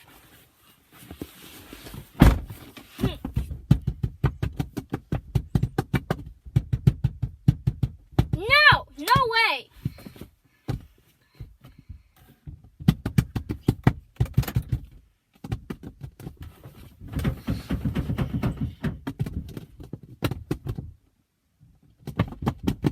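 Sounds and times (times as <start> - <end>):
thumps and knocks: 1.9 - 21.0, 22.0 - 22.9.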